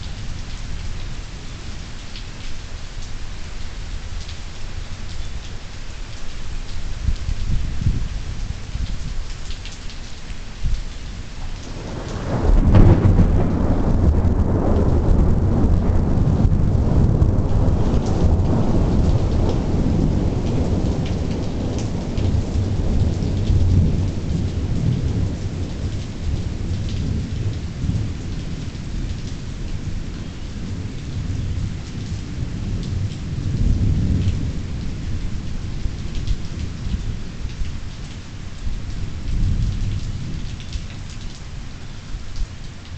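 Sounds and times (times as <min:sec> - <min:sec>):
steady rain: 0:00.0 - 0:42.9
thunder rumbling: 0:11.6 - 0:29.3.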